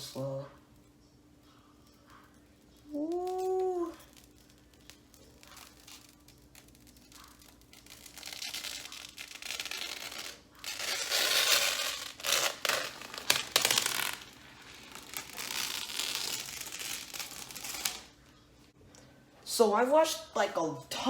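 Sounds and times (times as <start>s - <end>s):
plastic film crinkling: 2.6s - 18.4s
plastic film ripping: 3.0s - 18.2s.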